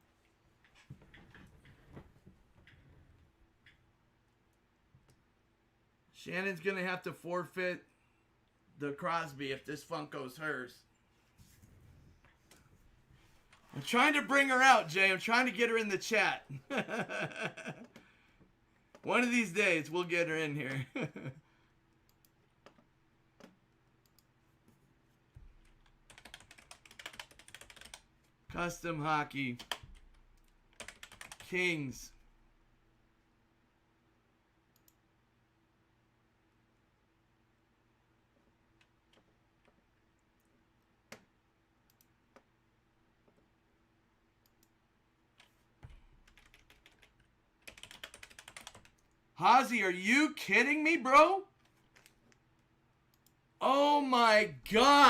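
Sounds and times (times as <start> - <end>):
rapid keyboard typing: 25.4 - 28.7, 29.5 - 31.6, 45.4 - 49.2
faint clicks: 34.7 - 35.0.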